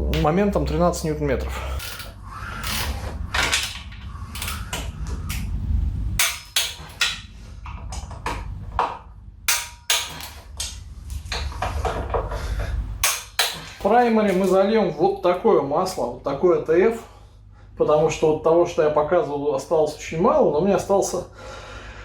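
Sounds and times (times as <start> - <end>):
metal tools clicking and knocking: 9.5 - 10.7, 13.0 - 14.5.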